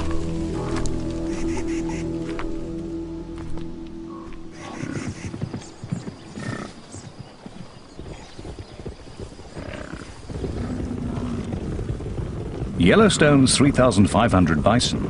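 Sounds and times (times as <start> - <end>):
hooves thudding and clattering: 0.0 - 15.0
high animal calls: 1.2 - 2.3, 4.1 - 7.0.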